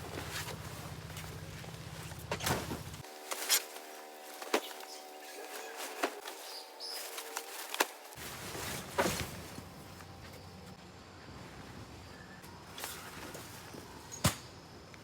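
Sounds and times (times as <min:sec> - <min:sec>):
rustling: 0:00.0 - 0:10.4.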